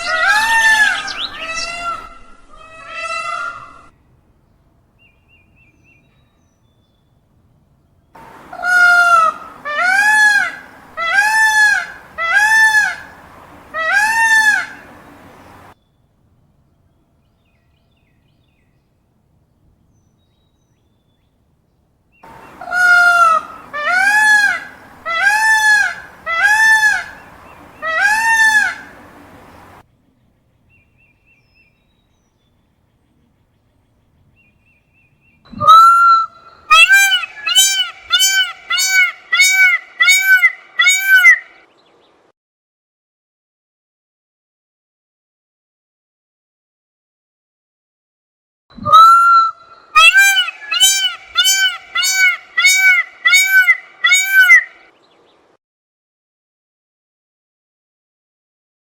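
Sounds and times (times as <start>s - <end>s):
peacock calling: 0.0s - 4.0s, 8.2s - 15.8s, 22.2s - 41.8s, 48.8s - 55.0s.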